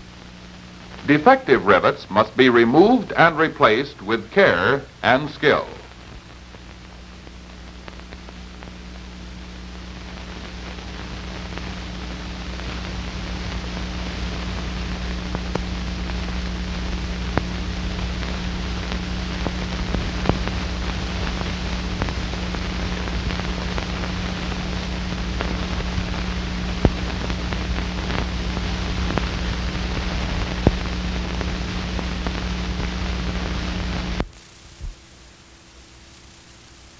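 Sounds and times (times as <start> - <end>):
crackles and pops: 0.0 - 36.9
film soundtrack hiss: 0.0 - 36.9
low mains hum: 0.0 - 36.9.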